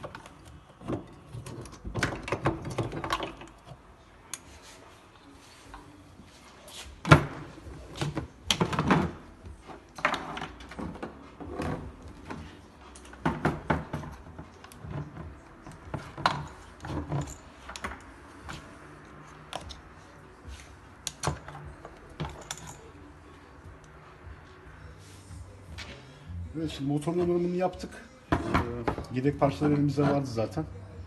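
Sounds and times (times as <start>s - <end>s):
hand tools and parts clattering: 0.0s - 4.5s, 7.0s - 20.0s, 21.0s - 23.2s.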